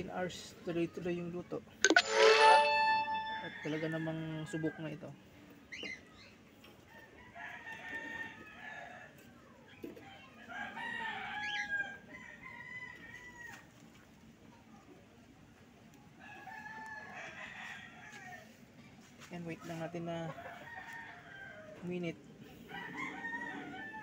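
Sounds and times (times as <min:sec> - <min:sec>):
rooster crowing: 0:22.7 - 0:24.0.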